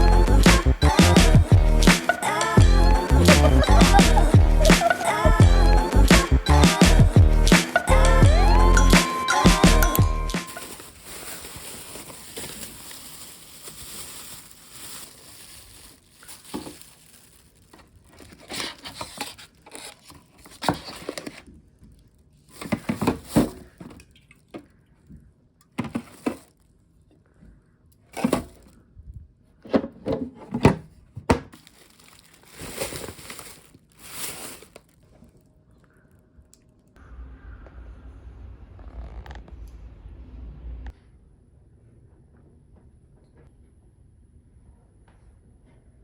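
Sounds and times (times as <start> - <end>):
rustling and crinkling handling: 10.3 - 27.1, 28.1 - 28.8, 30.2 - 35.6.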